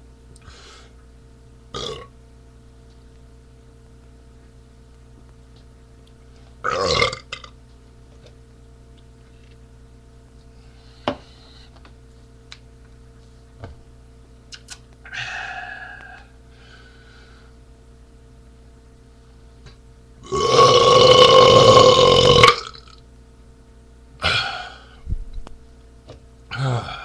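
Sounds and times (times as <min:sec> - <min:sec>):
faint steady hum: 0:00.0 - 0:27.0
man burping: 0:01.7 - 0:02.1, 0:06.6 - 0:07.5, 0:20.2 - 0:23.0, 0:24.2 - 0:25.0, 0:26.5 - 0:27.0.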